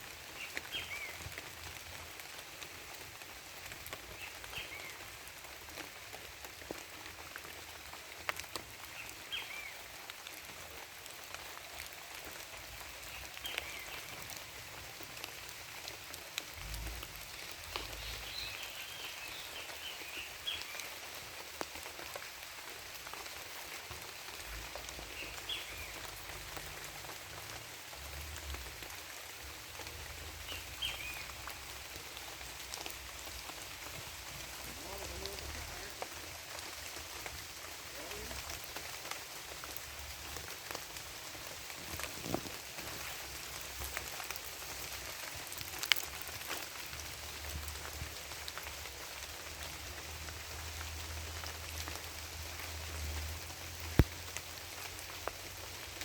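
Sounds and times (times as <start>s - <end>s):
light scattered ticks: 38.0s - 48.8s.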